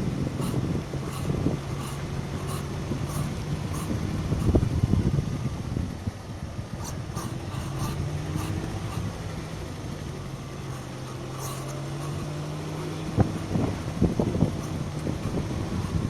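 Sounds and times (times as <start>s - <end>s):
car wheel squeaking: 0.0s - 4.9s, 6.7s - 16.0s
car low hum: 0.0s - 16.0s.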